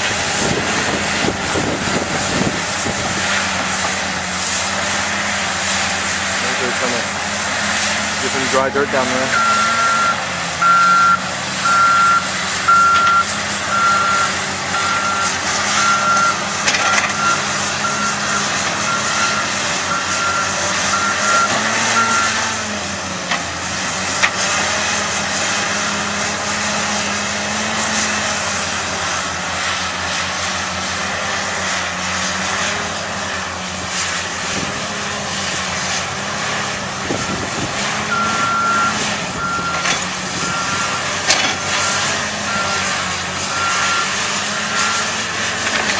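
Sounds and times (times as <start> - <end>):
heavy diesel engines under load: 0.0 - 45.9
reversing alarm beeping: 9.2 - 22.5, 37.1 - 45.2.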